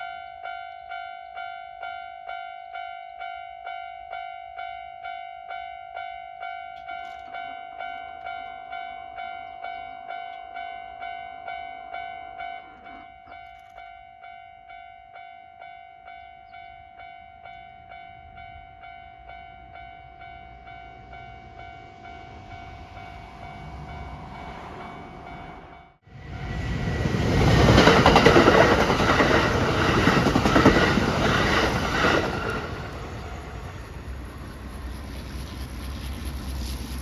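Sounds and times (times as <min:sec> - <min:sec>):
train rumbling: 0:17.4 - 0:37.0
train wheel clatter: 0:26.3 - 0:37.0.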